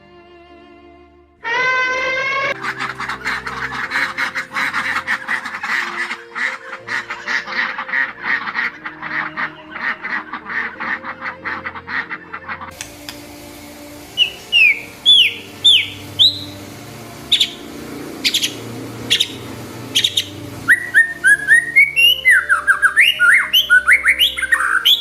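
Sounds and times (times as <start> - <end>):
bird whistling downward notes: 14.1 - 16.6, 17.2 - 25.0
bird chattering whistles: 14.2 - 16.6, 17.3 - 25.0.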